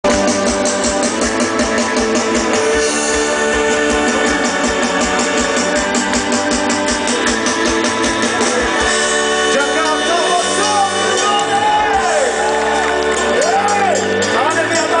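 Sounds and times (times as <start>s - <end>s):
live band playing: 0.0s - 15.0s.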